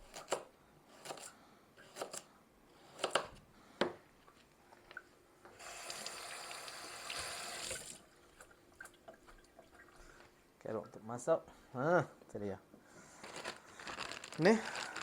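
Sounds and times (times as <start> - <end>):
kitchen tap running: 5.6 - 8.0.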